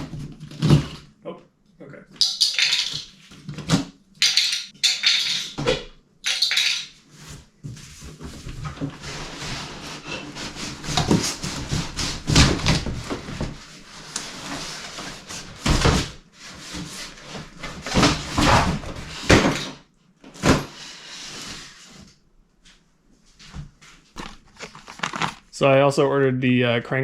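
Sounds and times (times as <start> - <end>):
cardboard boxes knocking and rustling: 10.7 - 14.0.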